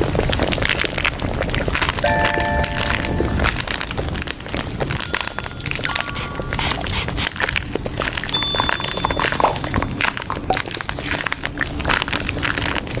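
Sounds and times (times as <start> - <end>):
high ringing chime: 2.0 - 3.8, 5.0 - 7.2, 8.3 - 9.9.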